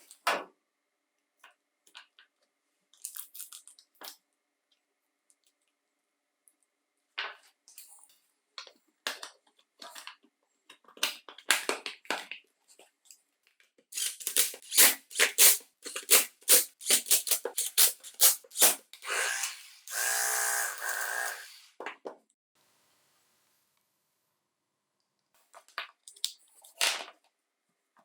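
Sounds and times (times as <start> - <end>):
small hard parts clicking: 13.9 - 21.5
steady buzz: 19.0 - 21.7.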